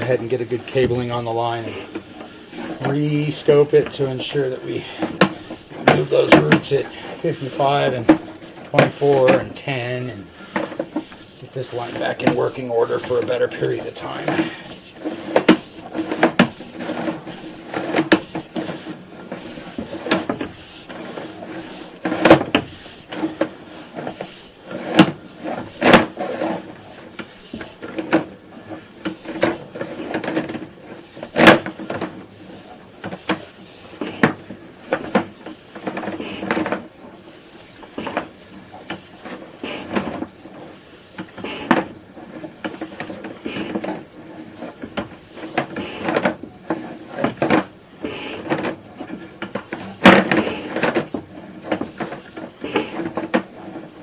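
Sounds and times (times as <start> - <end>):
knocks of plumbing equipment handled: 0.0 - 26.1.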